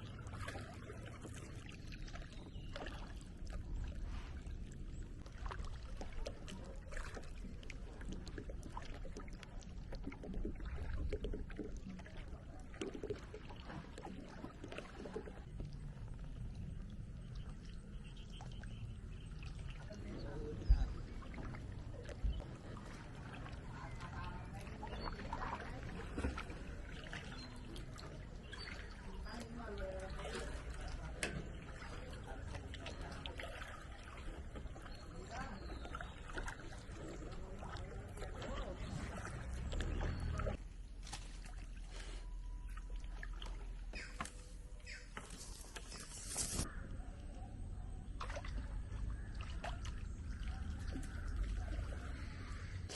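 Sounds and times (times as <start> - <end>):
water splashing around boat: 0.0 - 52.9.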